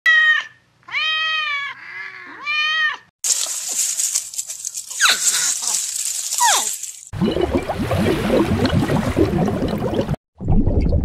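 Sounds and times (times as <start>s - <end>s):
quick falling squeaks: 6.3s - 6.8s.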